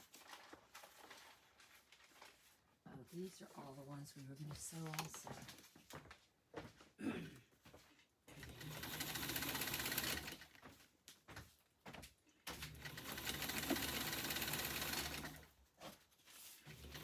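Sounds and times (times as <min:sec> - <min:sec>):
electric sewing machine stitching: 0:08.4 - 0:10.5, 0:12.6 - 0:15.5, 0:16.7 - 0:17.0.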